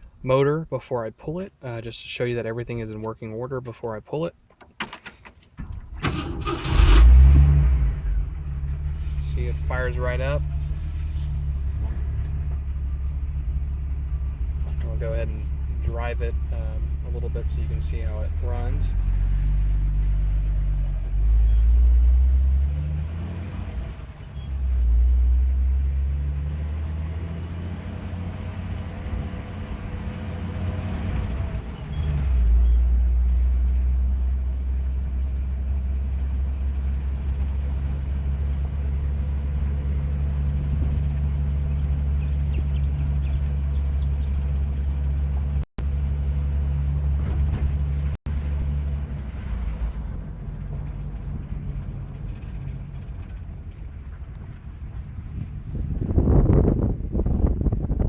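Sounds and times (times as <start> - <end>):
car engine accelerating through gears: 5.7 - 35.2.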